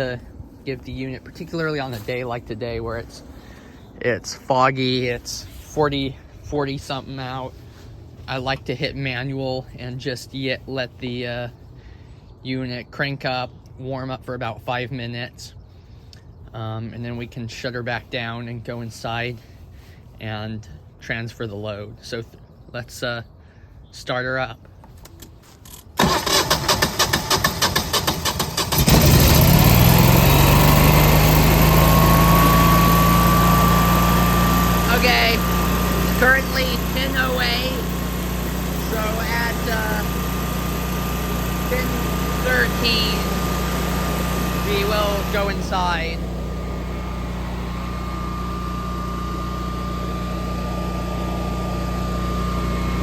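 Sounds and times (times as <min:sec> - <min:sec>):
generator engine cranking: 0:25.7 - 0:53.0
generator engine running: 0:26.0 - 0:53.0.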